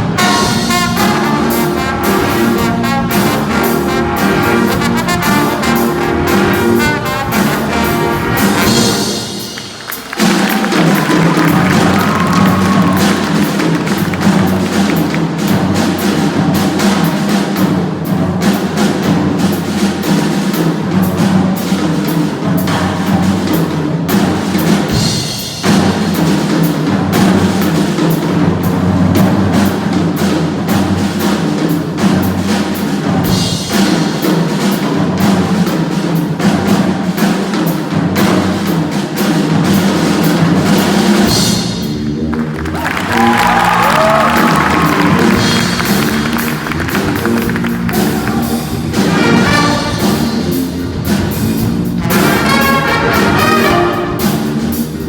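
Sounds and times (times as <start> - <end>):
bass line: 0.0 - 16.9, 40.6 - 55.0
drum kit groove: 0.0 - 55.0
funk music: 0.0 - 55.0.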